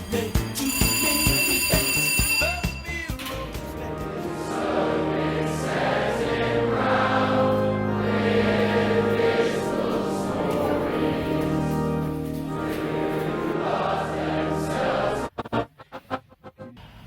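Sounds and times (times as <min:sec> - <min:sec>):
choir singing sustained chords: 0:03.7 - 0:16.6.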